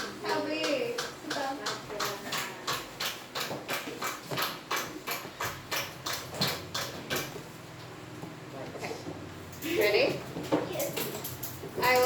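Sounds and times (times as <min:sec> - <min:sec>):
rapid even tapping: 0:00.0 - 0:07.5.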